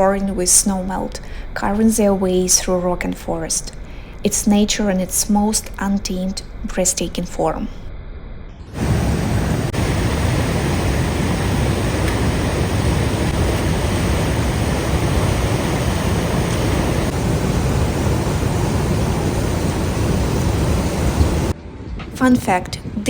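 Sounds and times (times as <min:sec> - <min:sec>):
waterfall roaring: 0:08.8 - 0:21.5.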